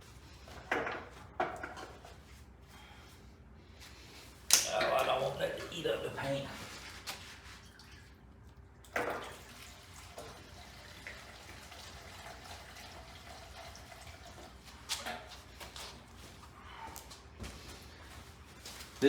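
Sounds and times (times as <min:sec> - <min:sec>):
fuel pouring into tank: 0:08.9 - 0:14.9.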